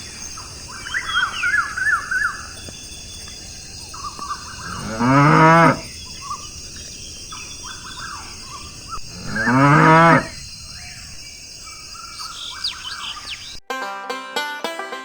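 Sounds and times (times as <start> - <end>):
cow mooing: 4.6 - 5.9, 9.1 - 10.4.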